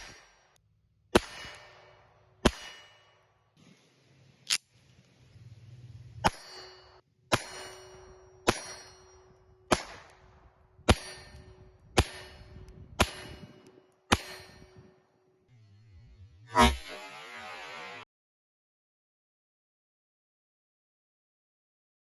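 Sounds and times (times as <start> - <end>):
pistol shots: 1.1 - 3.2, 9.7 - 10.3.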